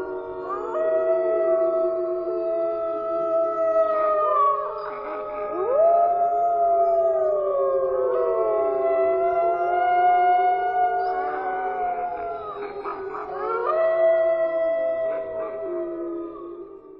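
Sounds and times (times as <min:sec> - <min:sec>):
wolves howling: 0:00.0 - 0:16.9
wolves yipping: 0:11.0 - 0:16.5.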